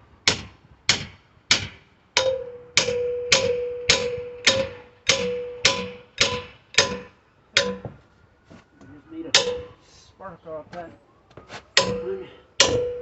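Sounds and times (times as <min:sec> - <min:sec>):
sledgehammer striking steel bar: 0:00.2 - 0:08.0, 0:09.3 - 0:09.8, 0:11.8 - 0:13.0.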